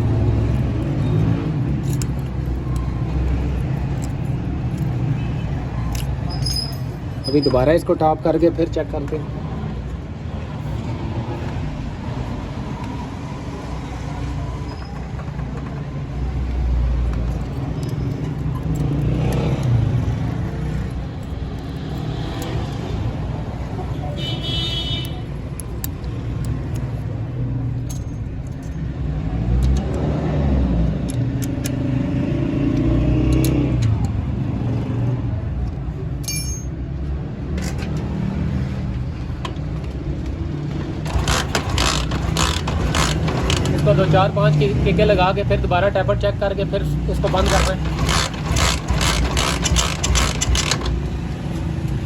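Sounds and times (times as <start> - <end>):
sharp metallic clicks: 0.4 - 8.0, 24.7 - 27.1, 30.8 - 34.4, 40.2 - 44.4, 46.8 - 52.0
vehicle engines speeding up: 10.6 - 23.8, 28.9 - 35.5.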